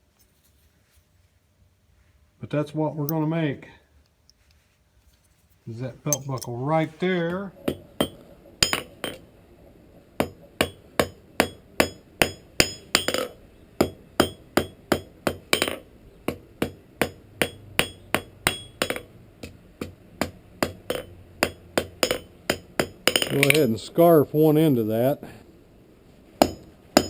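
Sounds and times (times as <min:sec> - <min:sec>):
hammer striking steel on anvil: 0:06.1 - 0:06.5, 0:10.2 - 0:15.8, 0:17.0 - 0:19.1, 0:20.6 - 0:23.7, 0:26.4 - 0:27.0.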